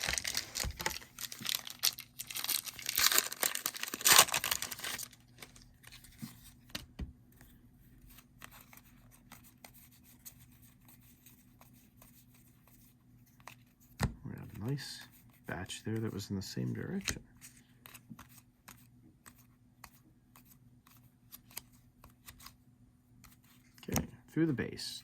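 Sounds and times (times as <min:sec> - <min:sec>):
wrapper crinkling and ripping: 0:00.0 - 0:06.1.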